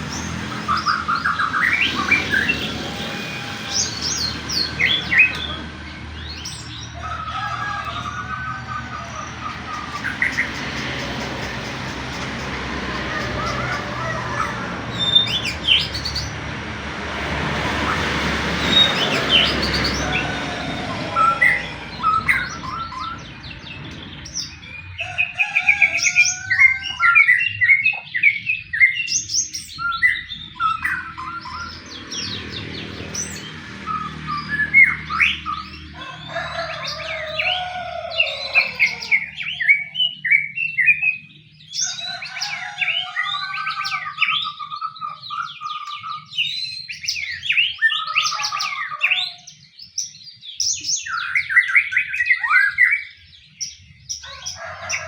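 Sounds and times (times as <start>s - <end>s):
steady rushing noise: 0.0s - 6.9s
bird singing whistles and chatter: 0.0s - 11.5s, 17.6s - 32.6s, 37.0s - 53.8s.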